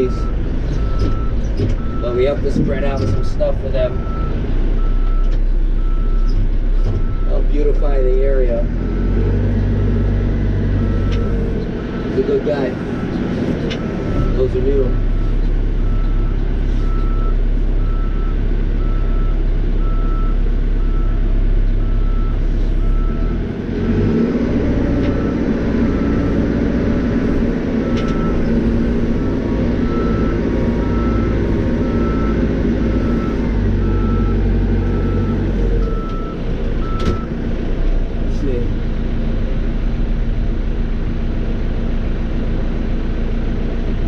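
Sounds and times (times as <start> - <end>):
diesel engine running under load: 0.0 - 44.0
reversing alarm beeping: 2.9 - 5.2, 10.8 - 12.3, 21.8 - 23.3, 27.8 - 28.5, 29.1 - 37.4.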